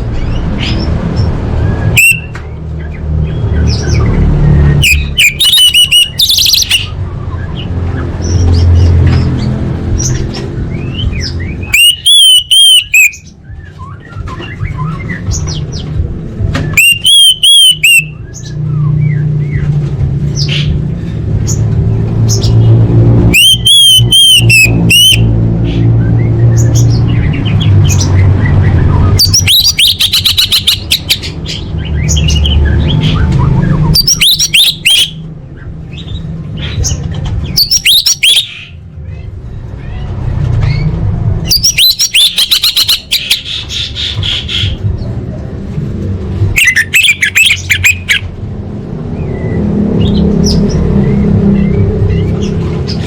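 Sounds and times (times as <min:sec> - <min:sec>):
thrush chirping and whistling: 0:01.6 - 0:02.4, 0:03.5 - 0:07.7, 0:10.7 - 0:15.5, 0:16.7 - 0:19.6, 0:23.3 - 0:27.2, 0:28.1 - 0:31.3, 0:32.0 - 0:35.2, 0:37.6 - 0:38.8, 0:41.5 - 0:43.9, 0:46.6 - 0:48.2.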